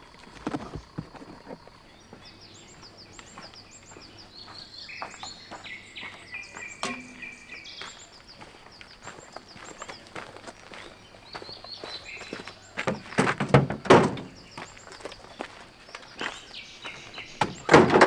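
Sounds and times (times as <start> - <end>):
small birds chirping: 0.0 - 18.0
sharp knocks: 6.8 - 7.4, 12.9 - 14.4, 17.4 - 18.0.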